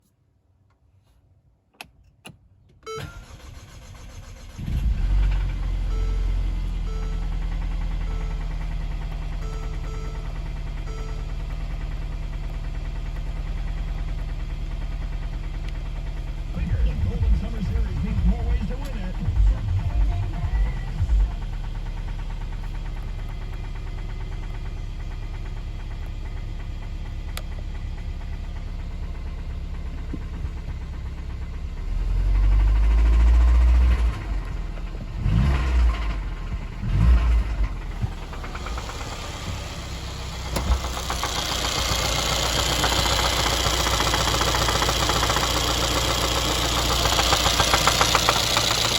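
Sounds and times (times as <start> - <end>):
starter cranking: 3.0 - 31.3, 32.3 - 48.9
car engine running loudly: 4.4 - 48.9.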